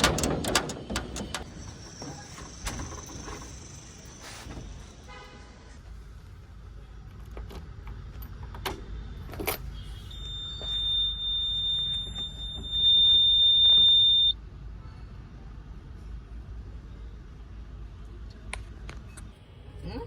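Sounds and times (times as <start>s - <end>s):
diesel machinery rumbling: 0.0s - 14.3s
high-pitched alarm tone: 10.1s - 14.4s.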